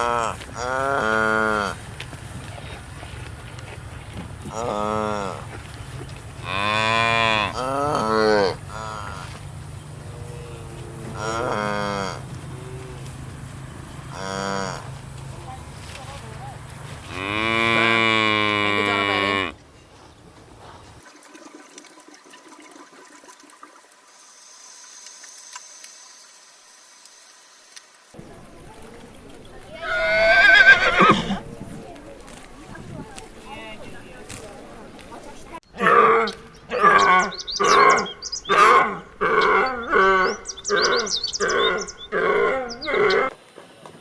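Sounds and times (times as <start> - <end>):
large animal calling loudly: 11.2 - 12.2, 29.8 - 31.4, 35.7 - 43.3
faint running water: 20.4 - 30.9
birds chirping: 35.6 - 43.3.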